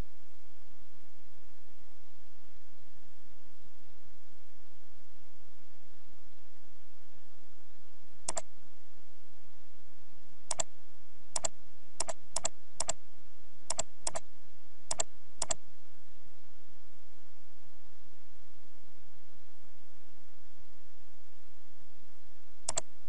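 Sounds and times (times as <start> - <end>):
computer mouse clicks: 8.3 - 8.5, 10.5 - 10.7, 11.4 - 13.0, 13.7 - 14.2, 14.9 - 15.6, 22.7 - 22.9.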